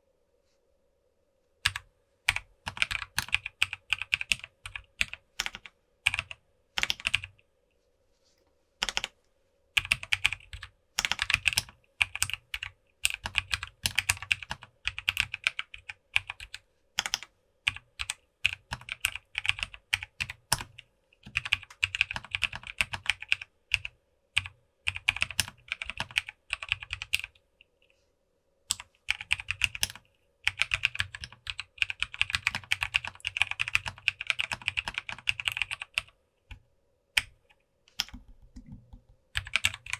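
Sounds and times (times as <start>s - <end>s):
mechanical keyboard typing: 1.7s - 7.3s, 8.8s - 9.1s, 9.8s - 27.3s, 28.7s - 36.1s, 37.2s - 39.9s.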